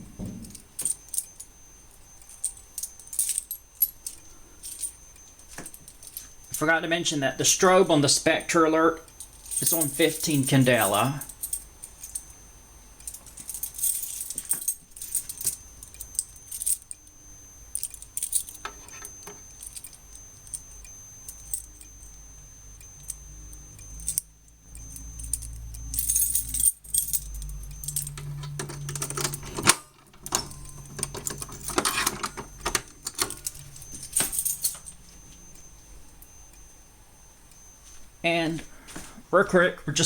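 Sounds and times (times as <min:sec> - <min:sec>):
faint high-pitched tone: 0:00.0 - 0:29.4, 0:30.3 - 0:40.0
metallic jangling and rattling: 0:09.1 - 0:12.3, 0:13.1 - 0:17.0, 0:24.0 - 0:35.1.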